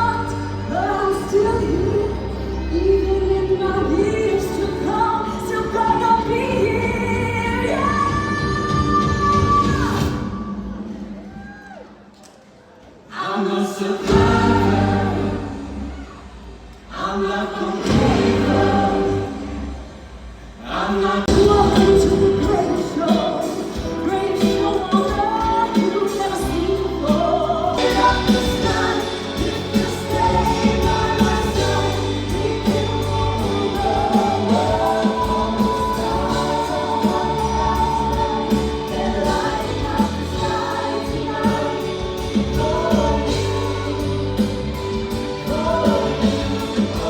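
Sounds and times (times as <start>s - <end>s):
choir-like singing: 12.9s - 47.0s.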